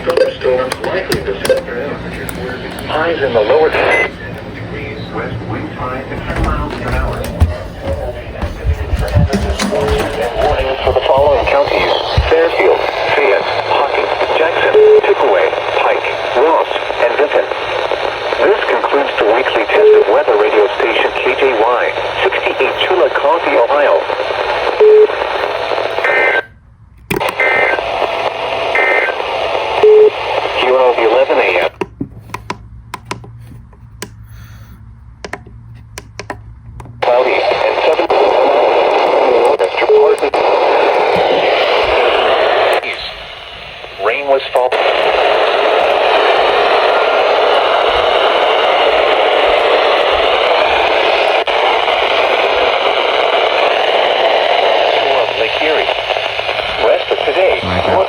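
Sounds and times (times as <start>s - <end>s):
radio static: 0.0s - 26.5s, 27.2s - 31.8s, 37.0s - 58.0s.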